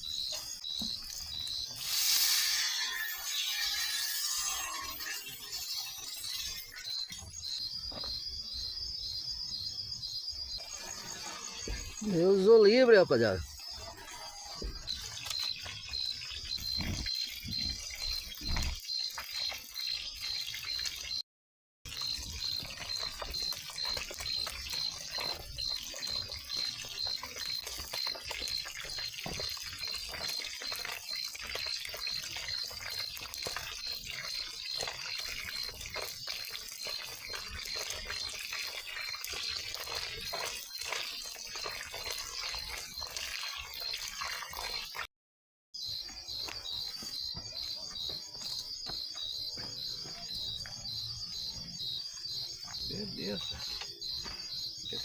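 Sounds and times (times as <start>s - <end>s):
insects chirping: 0.0s - 21.2s, 21.9s - 45.1s, 45.8s - 55.0s.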